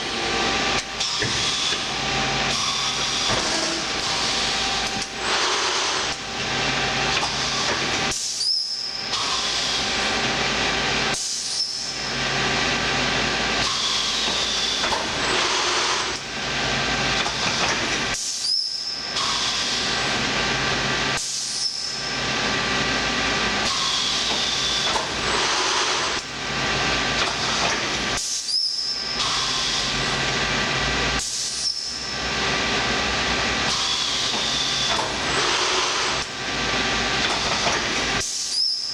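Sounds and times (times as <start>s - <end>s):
machine hissing: 0.2s - 16.2s, 23.5s - 38.9s
short high squeak: 31.6s - 32.0s, 38.5s - 38.9s.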